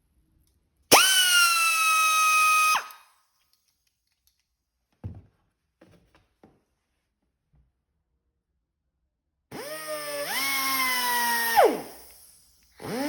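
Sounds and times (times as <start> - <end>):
pneumatic tool whine: 0.9 - 3.0, 9.5 - 13.0.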